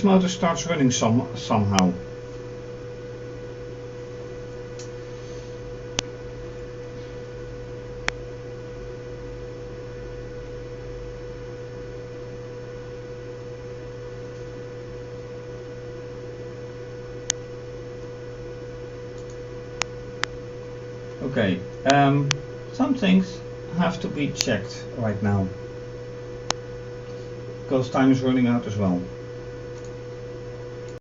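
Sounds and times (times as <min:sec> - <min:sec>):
sharp clicks: 0:19.2 - 0:20.4, 0:29.7 - 0:30.0.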